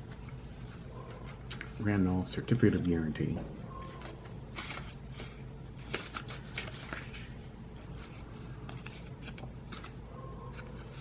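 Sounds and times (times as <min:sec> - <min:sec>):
steady low hum: 0:00.0 - 0:11.0
paper rustling and crinkling: 0:03.8 - 0:11.0.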